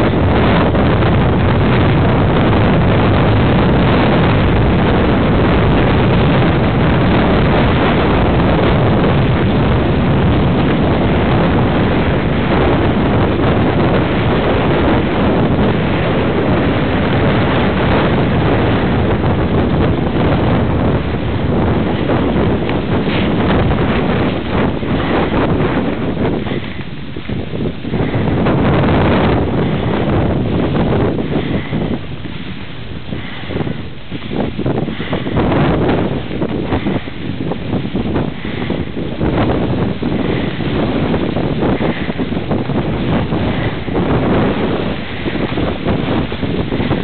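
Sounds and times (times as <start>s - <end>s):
wind blasting across microphone: 0.0s - 47.0s.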